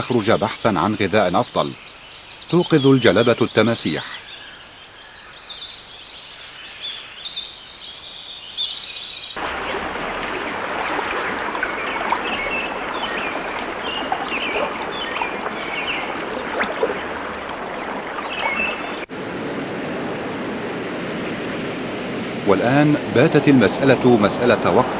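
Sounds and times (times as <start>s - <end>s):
birds calling: 0.0s - 19.1s
rushing water with splashes: 9.4s - 24.9s
bird chirps: 11.6s - 19.1s.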